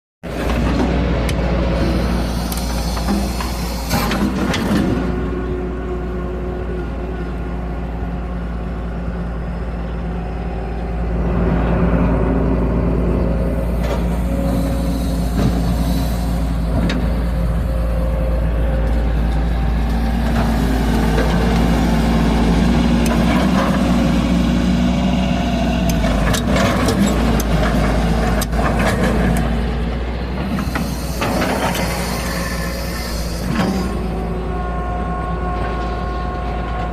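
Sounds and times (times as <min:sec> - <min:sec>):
diesel engine running under load: 0:00.2 - 0:36.9.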